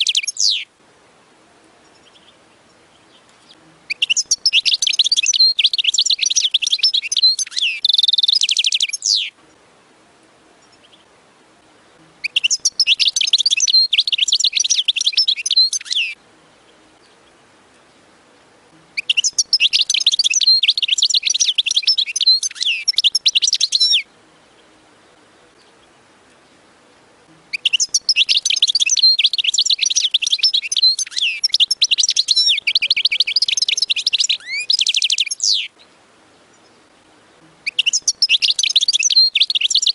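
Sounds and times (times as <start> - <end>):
goldfinch twittering song: 0.0 - 0.7, 1.8 - 9.4, 12.2 - 18.1, 18.8 - 26.7, 27.4 - 39.9.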